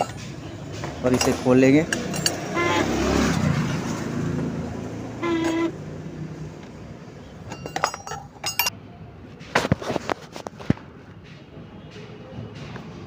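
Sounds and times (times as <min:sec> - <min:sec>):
metal tools clinking on metal: 0:00.0 - 0:00.3, 0:01.0 - 0:02.9, 0:07.4 - 0:08.7.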